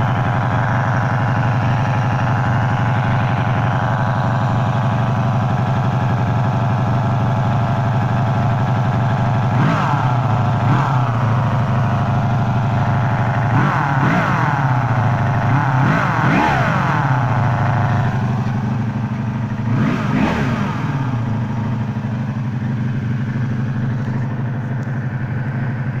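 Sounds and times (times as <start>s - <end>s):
motorcycle engine idling and revving: 0.0s - 26.0s.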